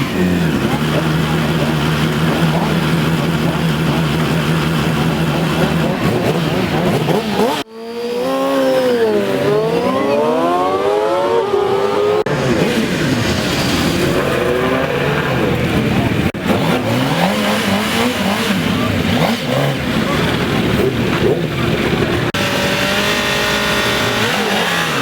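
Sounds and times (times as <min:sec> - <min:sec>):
motorcycle engines revving hard: 0:00.0 - 0:25.0.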